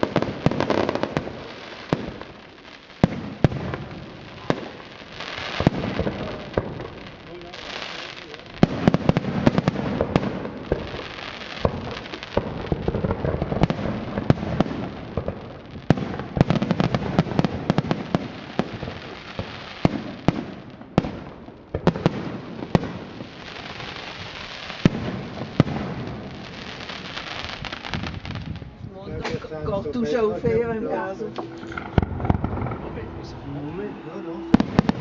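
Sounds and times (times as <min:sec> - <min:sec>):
fireworks crackling: 0:00.0 - 0:35.0
fireworks hissing: 0:00.0 - 0:35.0.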